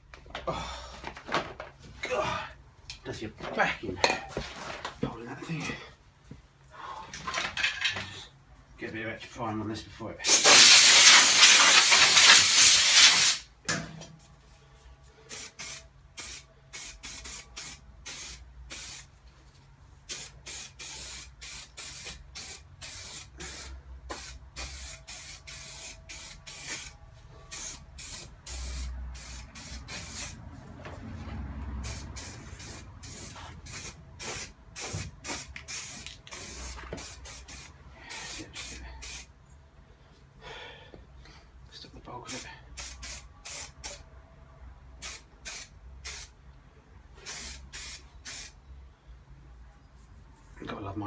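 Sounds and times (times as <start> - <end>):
spray primer hissing: 10.2 - 13.4, 15.3 - 19.1, 20.1 - 30.4, 31.8 - 39.3, 42.8 - 44.0, 45.0 - 46.3, 47.2 - 48.5.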